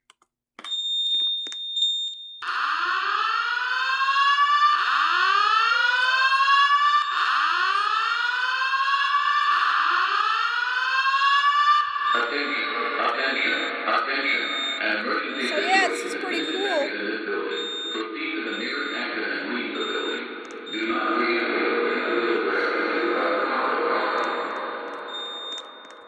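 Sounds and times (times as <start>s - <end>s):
whoop evacuation alarm tone: 2.4s - 12.8s
steady high-pitched beep: 14.4s - 16.9s, 24.3s - 26.0s
clicks: 24.2s - 26.0s.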